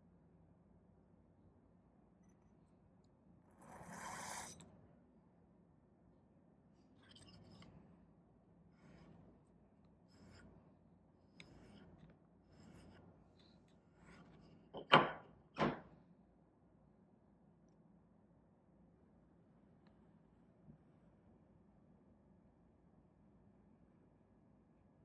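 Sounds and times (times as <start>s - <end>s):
blade scraping sharpening stone: 3.5s - 4.6s, 7.0s - 7.7s, 10.1s - 10.4s, 11.4s - 11.9s, 12.5s - 13.0s.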